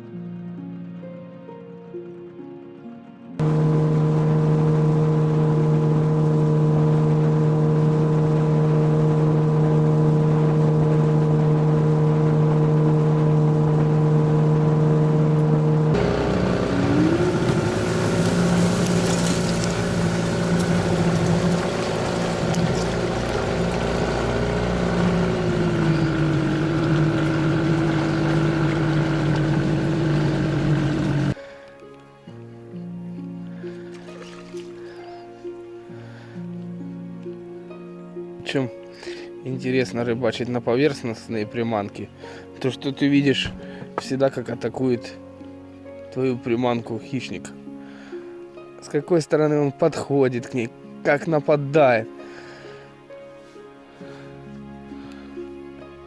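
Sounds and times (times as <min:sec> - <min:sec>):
water rushing: 0:03.4 - 0:31.3
outboard motor running: 0:03.4 - 0:31.4.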